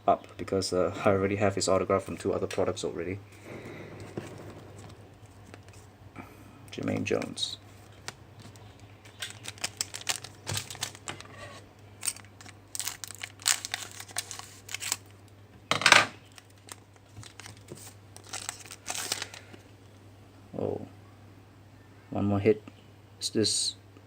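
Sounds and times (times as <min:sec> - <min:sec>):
cards rustling: 0:03.5 - 0:05.9, 0:06.8 - 0:15.2, 0:16.3 - 0:19.6
card pack wrapper crinkling: 0:06.8 - 0:11.4, 0:12.0 - 0:15.2, 0:16.2 - 0:19.6.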